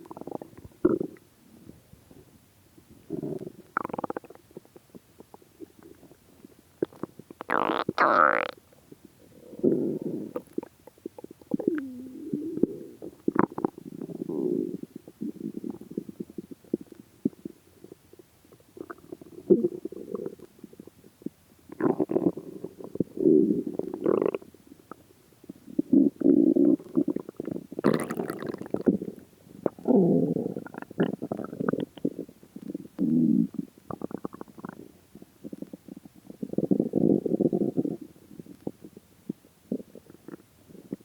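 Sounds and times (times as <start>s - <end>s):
stomach growling: 3.1s - 6.2s, 9.4s - 17.6s, 18.5s - 21.0s, 21.7s - 25.0s, 25.6s - 41.0s.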